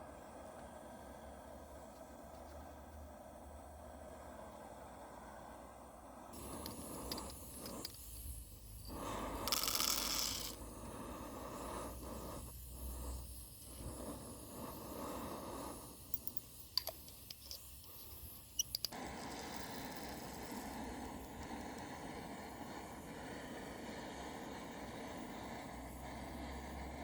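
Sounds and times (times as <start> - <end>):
hand coffee grinder grinding: 8.8 - 10.7.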